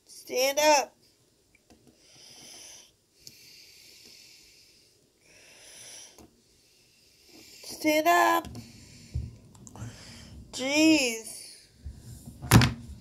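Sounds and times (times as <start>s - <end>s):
person breathing: 1.9s - 7.8s, 8.5s - 10.6s.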